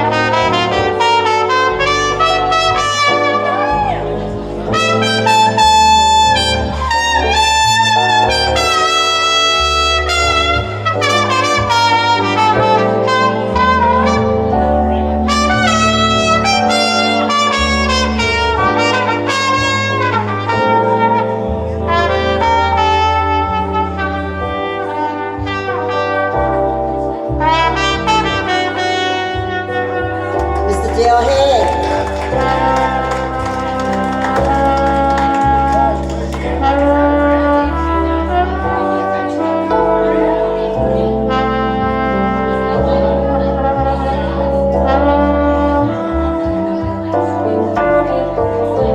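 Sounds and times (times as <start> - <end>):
jazz band accompaniment with bass: 0.0 - 48.9
trumpet solo: 0.0 - 48.9.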